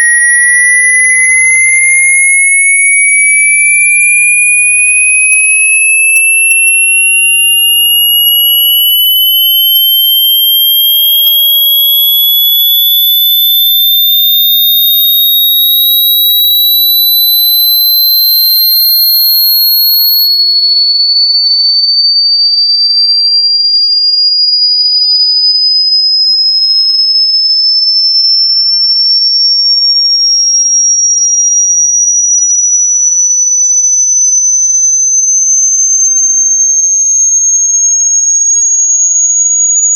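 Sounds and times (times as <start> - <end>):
electronic tone rising in pitch: 0.0 - 10.0.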